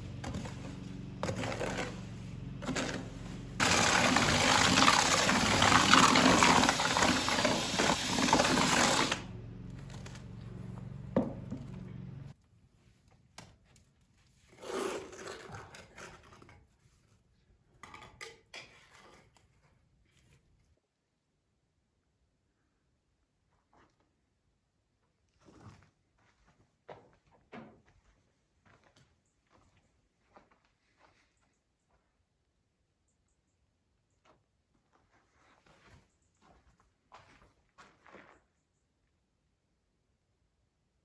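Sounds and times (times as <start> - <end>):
small electric motor humming: 0.0 - 12.3
rough noise: 0.0 - 12.4.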